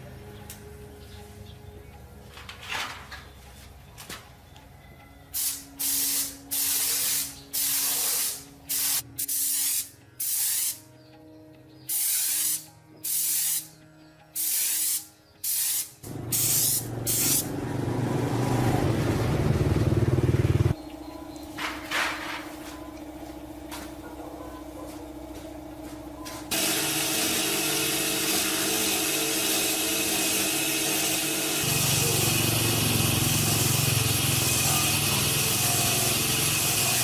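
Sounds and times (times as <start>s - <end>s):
short hissing spray bursts: 5.4s - 10.9s, 11.9s - 13.7s, 14.4s - 17.5s.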